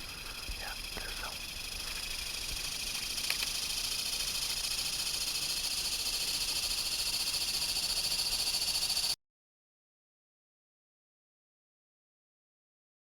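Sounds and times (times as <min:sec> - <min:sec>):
pulsing chorus of calling animals: 0:00.0 - 0:09.2.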